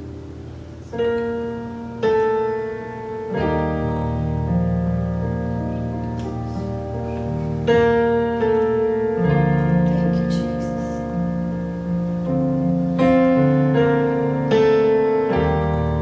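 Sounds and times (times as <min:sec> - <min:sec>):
sustained piano chords: 0:00.0 - 0:16.0.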